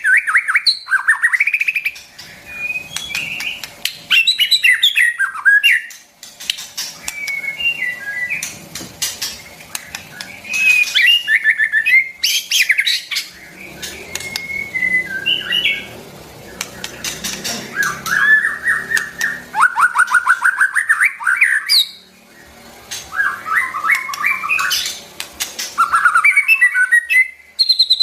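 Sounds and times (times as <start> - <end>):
bird singing whistled phrases: 0.0 - 1.9, 2.5 - 5.9, 7.0 - 8.5, 10.1 - 15.9, 17.7 - 22.1, 23.1 - 25.0, 25.8 - 28.0.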